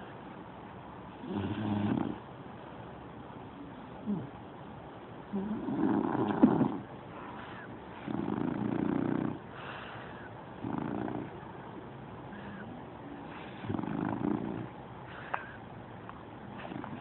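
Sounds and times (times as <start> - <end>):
pet snoring: 1.2 - 2.2, 4.0 - 4.3, 5.3 - 11.4, 12.3 - 15.6, 16.5 - 17.0.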